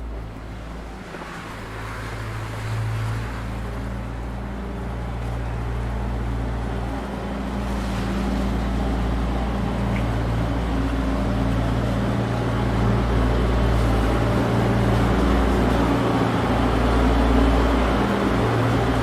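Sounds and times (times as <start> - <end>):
vehicle engine humming: 0.0 - 19.0.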